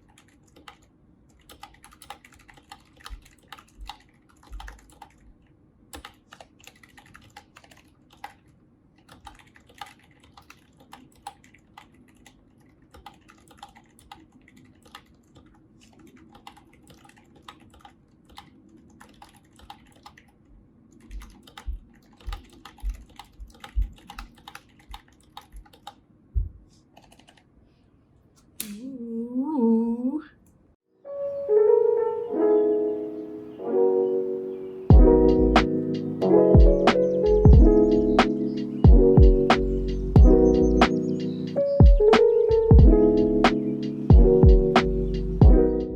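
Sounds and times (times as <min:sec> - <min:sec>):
typing on mechanical keyboard: 0:00.0 - 0:26.0, 0:27.0 - 0:27.5.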